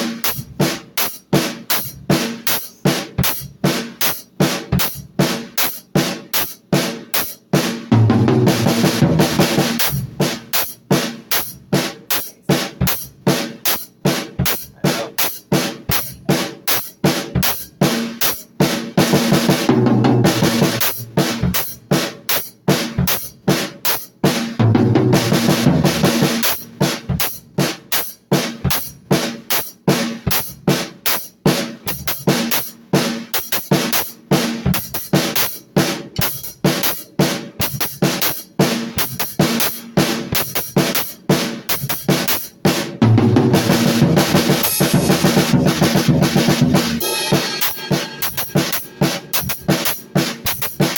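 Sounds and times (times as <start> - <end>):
drum kit fast strikes: 0.0 - 50.9
ringing cymbal washes: 44.6 - 45.7, 47.0 - 49.4.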